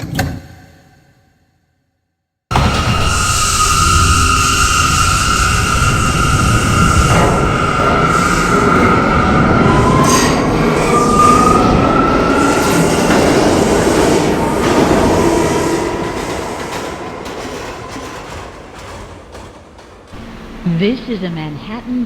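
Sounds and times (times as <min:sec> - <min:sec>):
train wheel squeal: 0:02.5 - 0:19.5
subway train running on track: 0:02.5 - 0:22.0.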